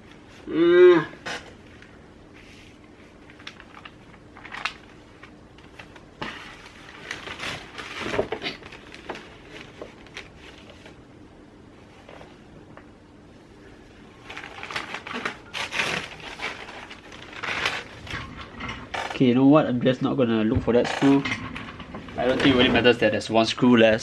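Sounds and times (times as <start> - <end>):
faint steady hum: 0.0 - 24.0.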